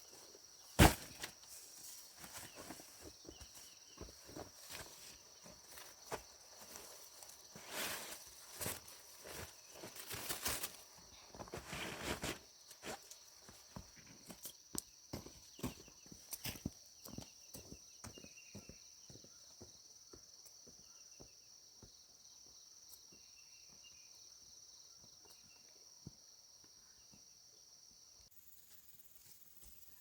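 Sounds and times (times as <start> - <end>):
dry corn leaves rustling: 0.7 - 13.1.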